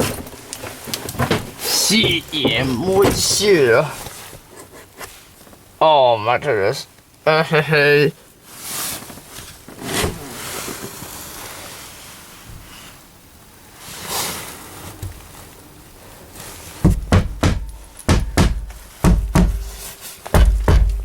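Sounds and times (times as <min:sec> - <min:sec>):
heavy thumps and knocks: 0:00.0 - 0:04.0, 0:16.8 - 0:21.0.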